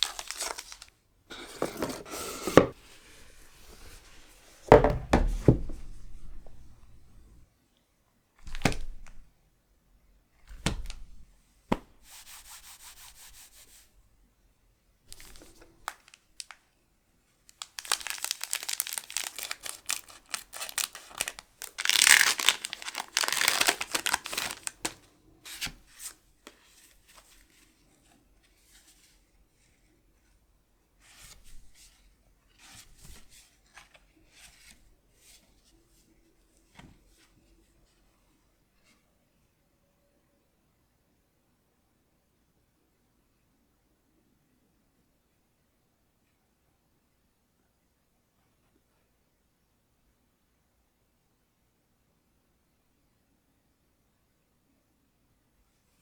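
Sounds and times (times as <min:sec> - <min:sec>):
foil wrapper crinkling and tearing: 0:00.0 - 0:00.9, 0:17.5 - 0:25.0.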